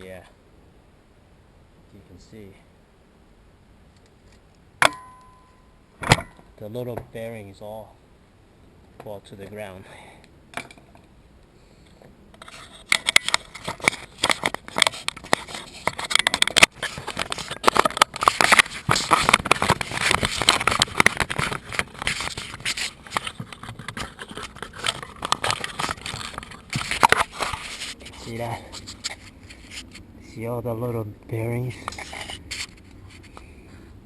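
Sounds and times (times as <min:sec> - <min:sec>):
metal bearing parts scraping: 0:12.4 - 0:30.0.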